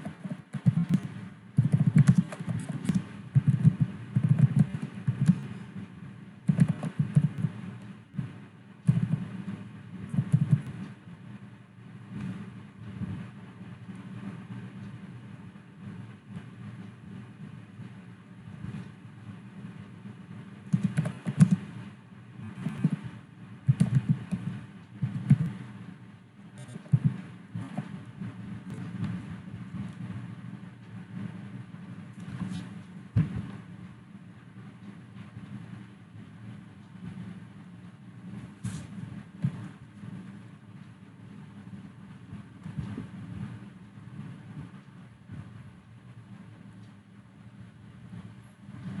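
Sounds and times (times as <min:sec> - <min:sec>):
low hum: 0:00.0 - 0:49.0
typing on computer keyboard: 0:01.6 - 0:05.5, 0:06.5 - 0:07.4, 0:10.2 - 0:10.8, 0:20.7 - 0:21.7, 0:23.7 - 0:24.4.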